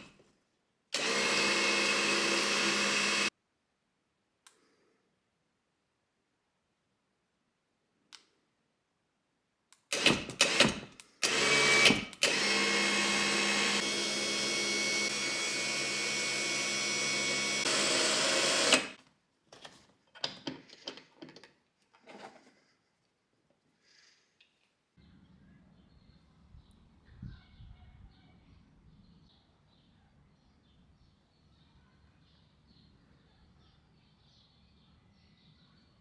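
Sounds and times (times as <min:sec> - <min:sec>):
electric winch motor whining: 0:01.0 - 0:03.3, 0:10.0 - 0:19.0.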